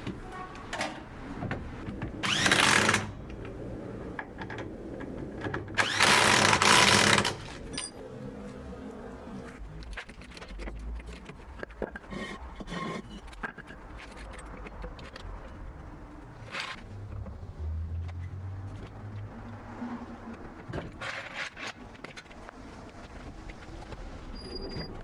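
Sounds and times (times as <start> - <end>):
metal clinks: 7.7 - 8.0.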